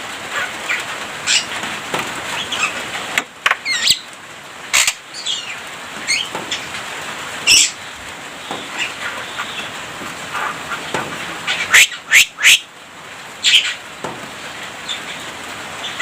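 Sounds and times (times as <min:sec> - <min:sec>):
bird singing chirps and whistles: 0:11.6 - 0:12.6.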